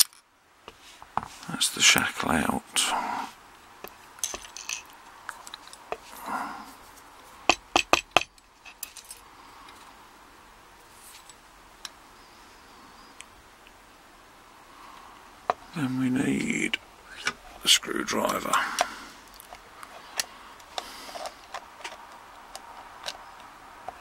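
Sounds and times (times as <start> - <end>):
small metal parts clinking: 0.0 - 0.2, 4.2 - 6.3, 7.5 - 9.9.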